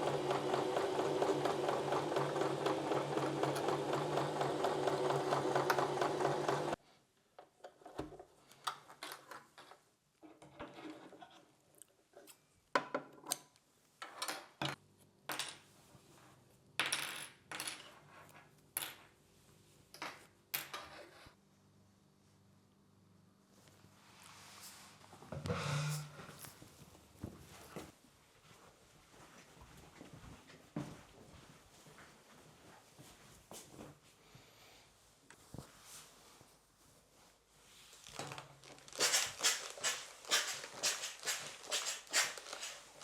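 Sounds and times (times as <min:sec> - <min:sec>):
sewing machine stitching: 0:00.0 - 0:06.8, 0:38.2 - 0:43.0.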